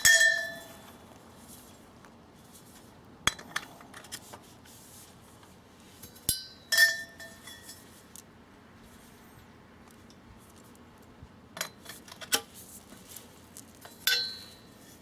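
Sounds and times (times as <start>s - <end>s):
dishes clinking: 14.0s - 14.6s.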